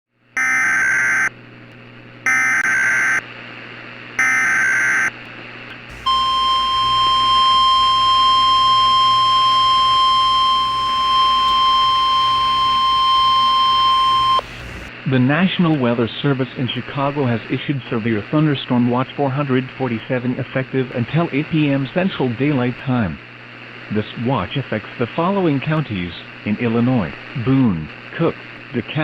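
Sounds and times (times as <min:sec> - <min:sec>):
steady alarm tone: 0:00.4 - 0:01.3, 0:02.2 - 0:03.2, 0:04.2 - 0:05.1, 0:05.9 - 0:14.9.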